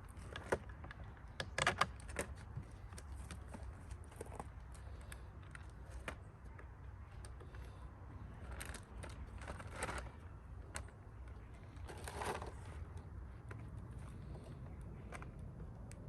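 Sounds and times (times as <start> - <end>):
low steady hum: 0.0 - 16.0
parts clicking and scraping: 0.0 - 16.0.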